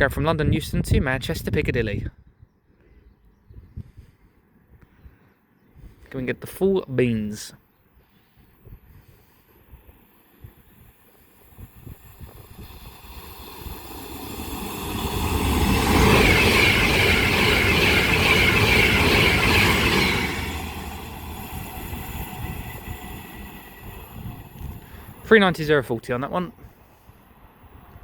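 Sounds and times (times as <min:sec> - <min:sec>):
high steady train whine: 0:10.0 - 0:25.7
electric train passing at speed: 0:10.0 - 0:25.8.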